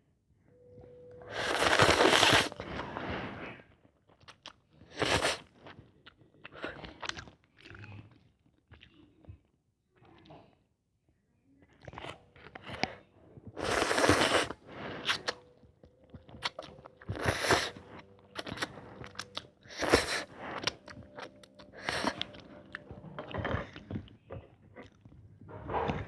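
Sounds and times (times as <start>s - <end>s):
mouth chewing noodles: 1.2s - 2.9s, 4.1s - 10.6s, 11.6s - 26.0s.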